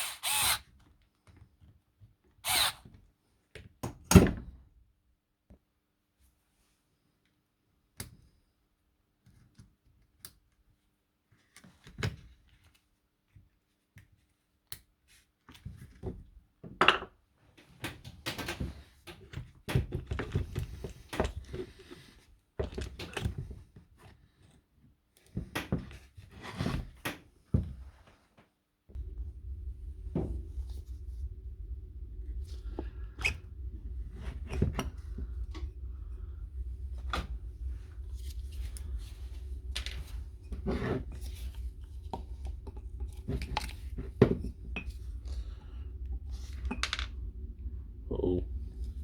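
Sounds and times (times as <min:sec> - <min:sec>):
steady low hum: 0:28.9 - 0:49.0.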